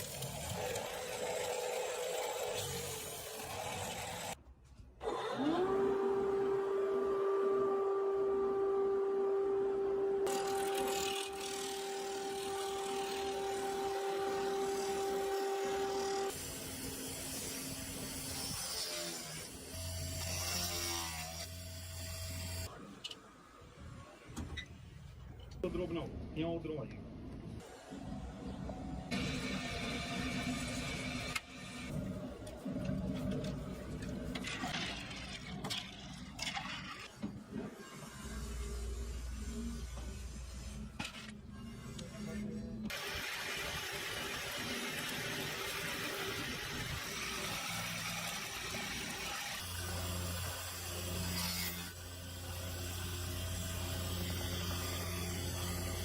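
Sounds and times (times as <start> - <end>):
power tool grinding bone: 0.0 - 4.4, 10.2 - 22.7, 42.9 - 56.0
workshop machinery humming: 5.0 - 16.6.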